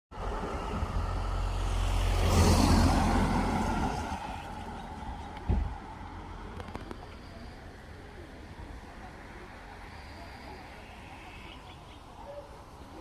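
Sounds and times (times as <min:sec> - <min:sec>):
road vehicle passing: 0:00.1 - 0:13.0
short thump: 0:05.4 - 0:05.8.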